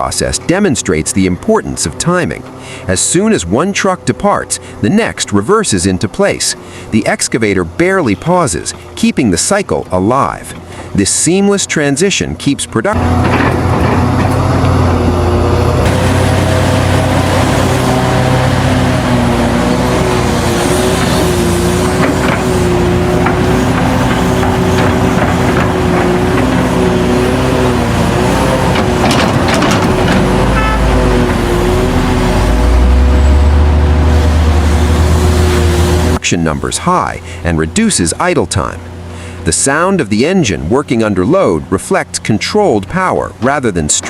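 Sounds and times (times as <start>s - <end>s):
heavy diesel engines under load: 0.0s - 44.0s
clanks and knocks: 13.0s - 14.9s, 20.9s - 27.6s, 28.2s - 31.8s.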